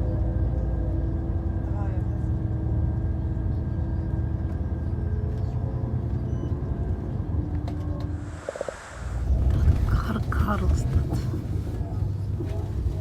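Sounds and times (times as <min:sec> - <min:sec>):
vehicle rumble from inside: 0:00.0 - 0:13.0.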